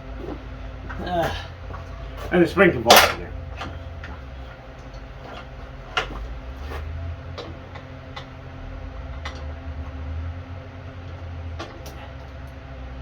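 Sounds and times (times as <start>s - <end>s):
steady low hum: 0.0s - 13.0s
metal tools clicking and clinking: 2.8s - 4.2s.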